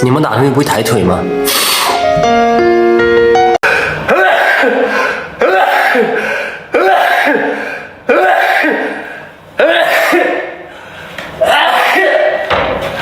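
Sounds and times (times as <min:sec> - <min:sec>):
man sneezing: 0:04.0 - 0:10.6, 0:11.4 - 0:12.4.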